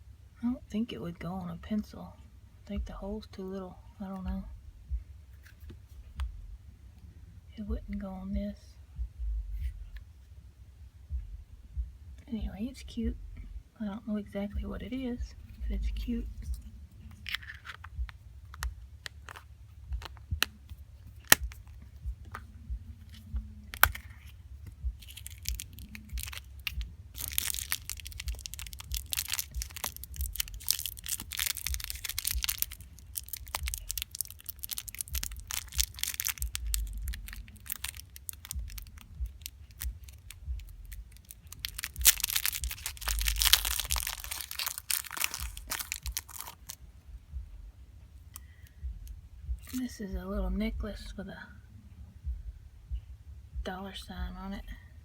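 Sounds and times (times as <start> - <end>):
wrapping crinkling and tearing: 16.0 - 18.0, 21.1 - 46.8, 49.6 - 49.9
plastic toys clicking: 25.0 - 46.8.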